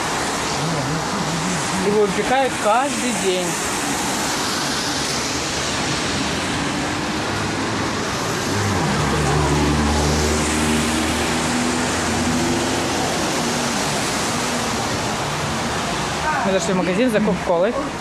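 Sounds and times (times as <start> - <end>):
passing cars rushing: 0.0 - 18.0
vehicle engine passing close: 7.4 - 13.9.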